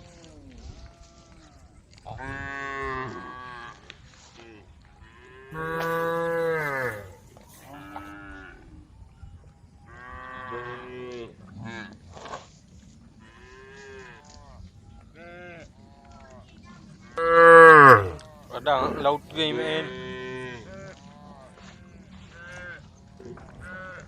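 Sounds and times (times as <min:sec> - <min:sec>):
cows mooing: 0:05.6 - 0:07.2, 0:17.2 - 0:19.2.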